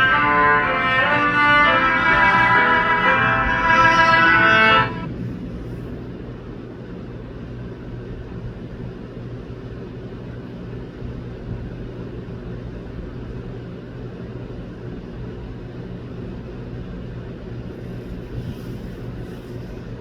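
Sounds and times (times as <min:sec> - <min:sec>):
low mechanical hum: 0:00.0 - 0:20.0.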